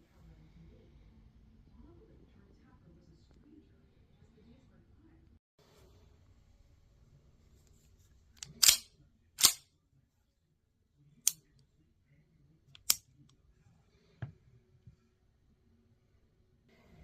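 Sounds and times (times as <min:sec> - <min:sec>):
pistol mechanism clicks and clacks: 0:08.4 - 0:09.6, 0:12.8 - 0:13.0.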